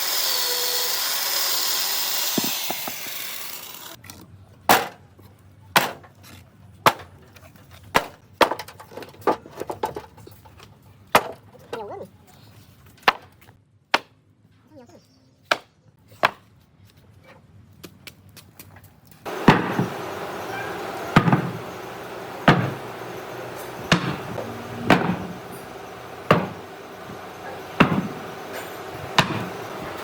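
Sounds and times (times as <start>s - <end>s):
power tool winding down: 0.0s - 4.0s, 19.3s - 30.0s
sharp knocks on wood: 29.2s - 29.6s.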